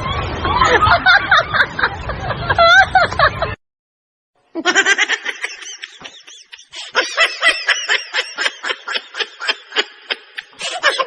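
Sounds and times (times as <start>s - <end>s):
high-pitched snickering laugh: 4.6s - 11.0s.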